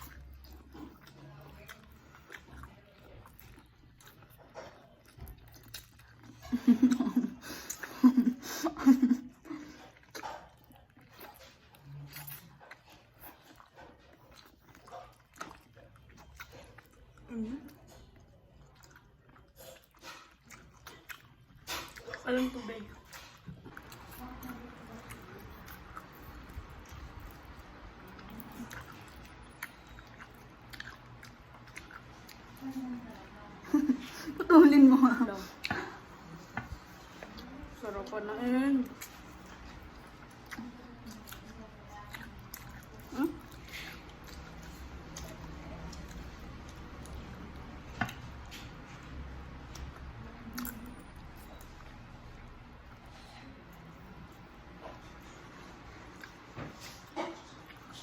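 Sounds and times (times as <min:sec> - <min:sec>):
chewing: 0:00.0 - 0:58.0
faint eating sounds: 0:00.0 - 0:58.0.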